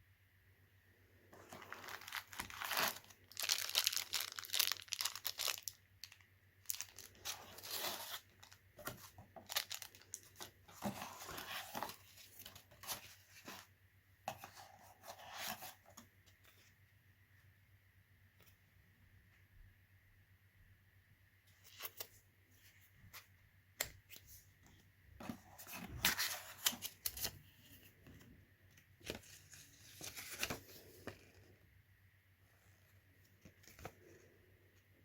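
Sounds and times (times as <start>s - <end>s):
packaging rustling and ripping: 1.4s - 12.9s.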